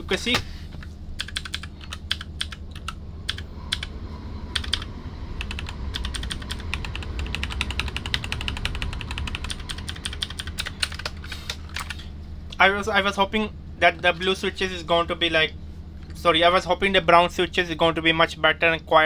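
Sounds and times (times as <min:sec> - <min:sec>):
typing on mechanical keyboard: 0:01.2 - 0:03.9, 0:04.6 - 0:12.0.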